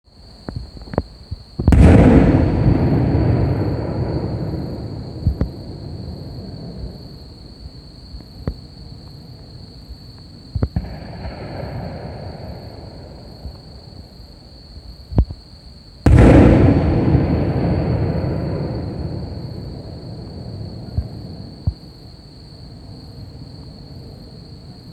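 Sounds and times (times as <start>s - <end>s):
loud firework boom echoing: 1.6s - 7.0s, 10.6s - 13.7s, 16.0s - 21.8s
firework bangs: 1.6s - 7.1s, 10.6s - 13.8s, 16.0s - 21.8s.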